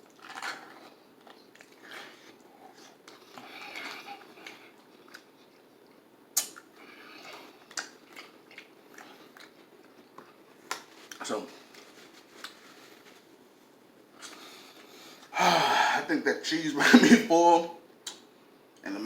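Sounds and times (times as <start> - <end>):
person chewing food: 0.0 - 13.3
crackles: 0.0 - 13.4.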